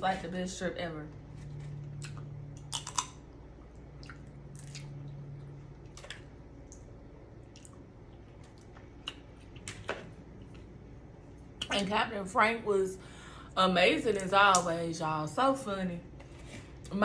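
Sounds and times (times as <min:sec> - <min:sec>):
chewing: 0:01.4 - 0:10.7
crab shell cracking: 0:02.6 - 0:03.2.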